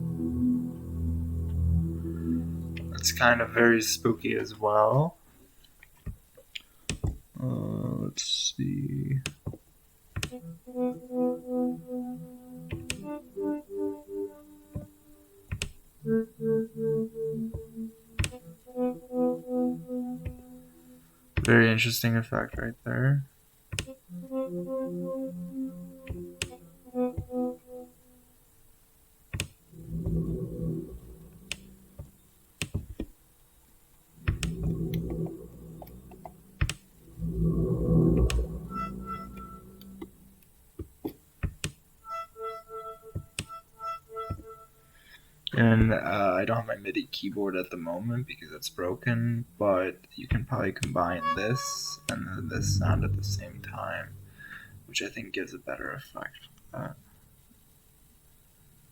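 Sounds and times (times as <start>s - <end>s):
pulsing synthesizer note: 0.0s - 4.2s, 29.7s - 32.2s, 34.2s - 40.4s, 51.0s - 55.0s.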